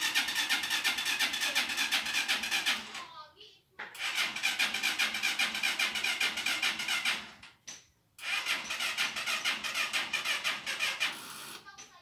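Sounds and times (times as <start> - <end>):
engine cranking without catching: 4.0 - 7.5, 8.2 - 11.6.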